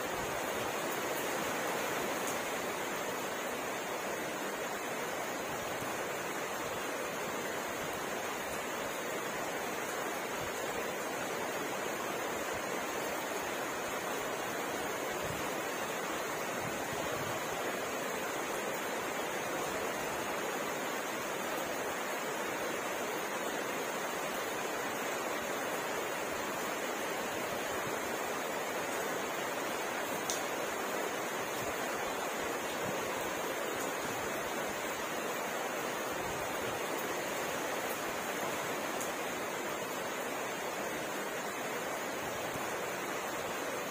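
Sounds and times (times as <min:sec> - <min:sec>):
steady rainfall: 0:00.0 - 0:43.9.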